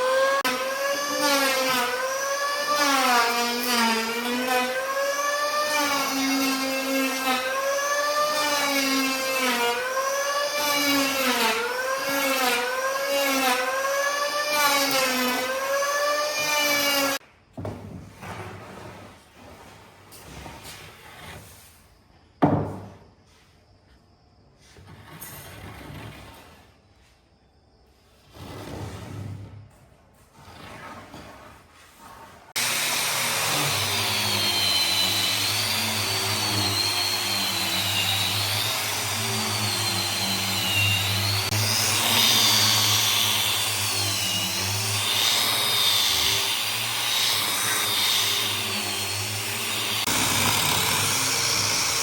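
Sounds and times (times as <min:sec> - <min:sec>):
power tool whining through wood: 0:00.0 - 0:17.2, 0:32.5 - 0:52.0.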